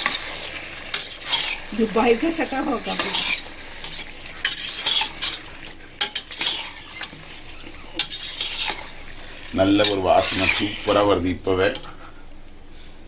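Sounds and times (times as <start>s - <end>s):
light sizzle: 0.0s - 13.0s
metal spoon scraping a pot: 0.9s - 1.8s, 2.8s - 11.1s.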